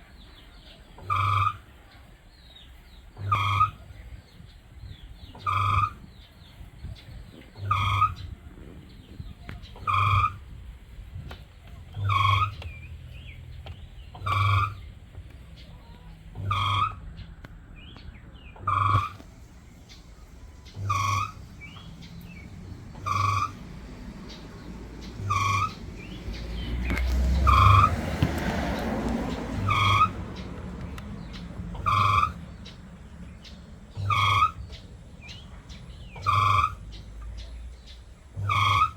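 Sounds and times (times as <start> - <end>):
washing machine beeping: 12.0 - 12.9, 18.6 - 26.0.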